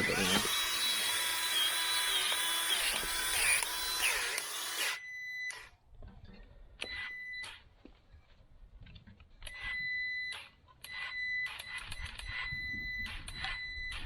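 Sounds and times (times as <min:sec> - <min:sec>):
grease gun motor whining: 0:00.0 - 0:05.0.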